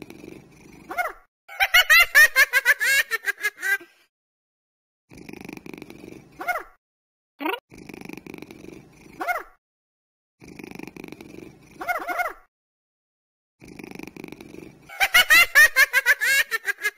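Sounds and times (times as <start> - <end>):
cat purring: 0.0 - 0.9, 5.1 - 6.4, 7.7 - 9.2, 10.4 - 11.9, 13.6 - 14.9
high giggling calls: 11.8 - 12.5.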